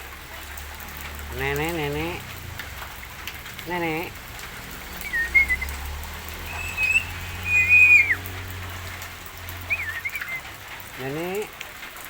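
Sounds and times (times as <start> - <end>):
myna whistling: 5.0 - 5.8, 6.4 - 8.2, 9.7 - 10.5.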